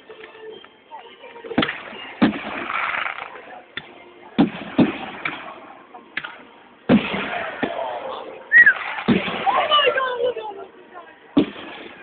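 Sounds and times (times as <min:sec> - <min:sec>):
fireworks bangs: 0:01.6 - 0:03.6, 0:04.4 - 0:05.7, 0:06.3 - 0:10.2, 0:11.3 - 0:12.0
fireworks hissing: 0:01.6 - 0:03.6, 0:08.5 - 0:10.0.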